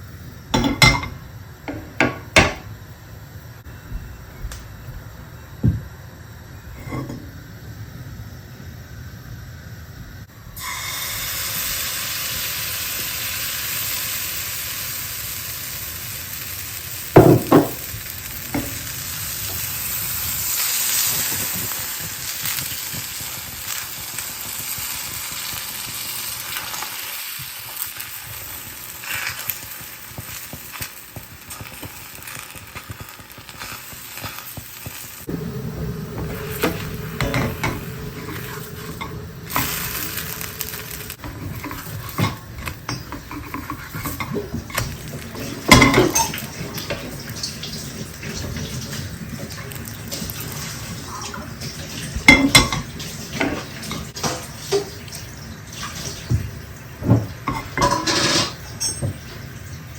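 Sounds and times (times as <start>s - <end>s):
food sizzling in a pan: 10.2s - 59.9s
utensil clatter: 57.5s - 59.2s.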